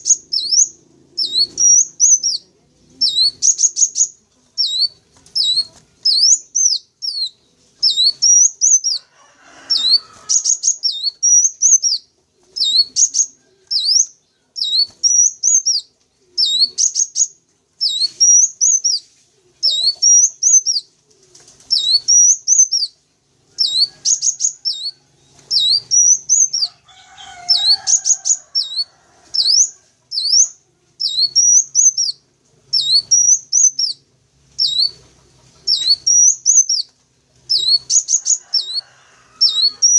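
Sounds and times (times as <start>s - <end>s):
faint low chatter: 0.0s - 39.9s
bird call chirps: 9.7s - 20.9s, 23.6s - 26.8s, 27.5s - 32.2s, 32.8s - 34.0s, 34.6s - 35.0s, 35.6s - 36.9s, 37.5s - 38.8s.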